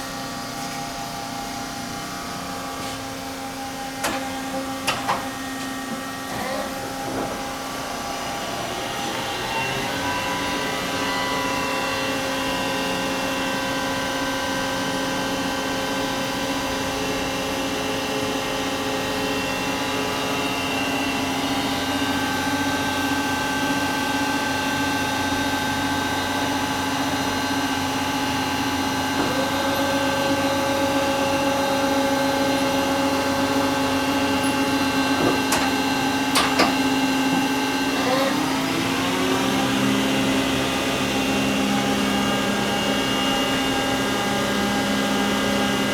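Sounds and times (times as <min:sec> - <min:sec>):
lathe mechanical whine: 0:00.0 - 0:45.9.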